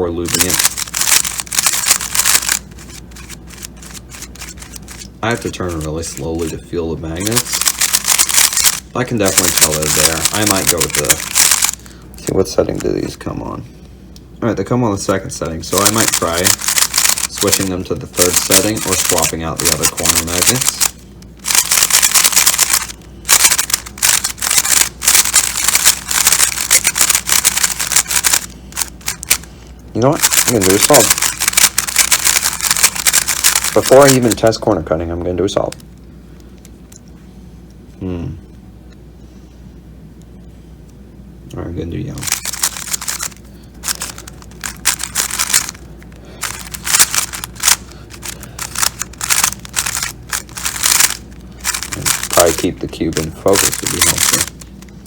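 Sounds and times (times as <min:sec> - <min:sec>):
speed cube clicking: 0:00.3 - 0:06.3, 0:07.2 - 0:11.8, 0:15.6 - 0:29.5, 0:30.2 - 0:34.5, 0:42.2 - 0:45.8, 0:46.4 - 0:54.8.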